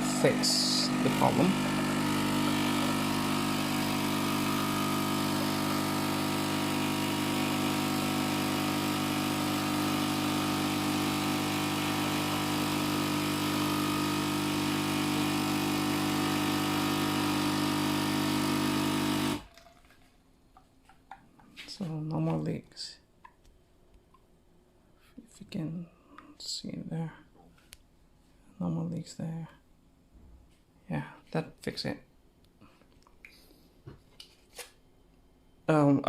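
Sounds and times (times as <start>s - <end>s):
coffee machine pump humming: 0.0s - 19.6s.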